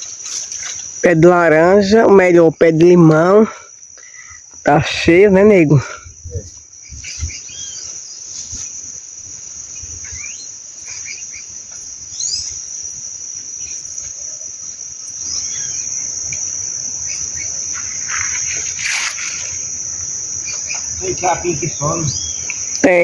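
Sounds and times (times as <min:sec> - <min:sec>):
insects trilling: 0:00.0 - 0:23.0
bird chirps: 0:06.8 - 0:08.7, 0:09.7 - 0:12.6, 0:15.2 - 0:15.9, 0:20.4 - 0:22.8.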